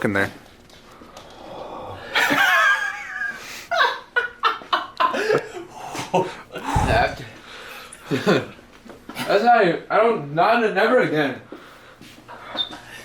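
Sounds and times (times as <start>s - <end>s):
people chuckling: 2.1s - 7.3s.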